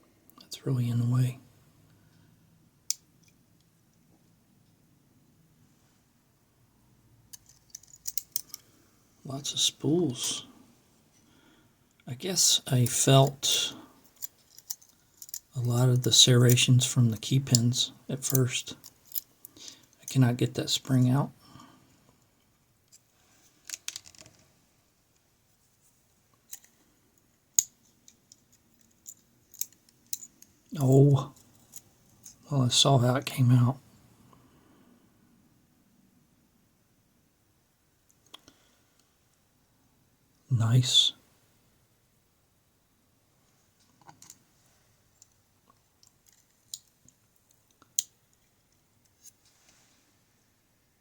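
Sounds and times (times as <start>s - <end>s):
tools clicking and scraping on lock: 7.3s - 8.7s, 14.0s - 15.5s, 18.3s - 20.0s, 22.9s - 24.4s, 27.5s - 30.7s, 31.3s - 32.4s, 45.2s - 49.4s.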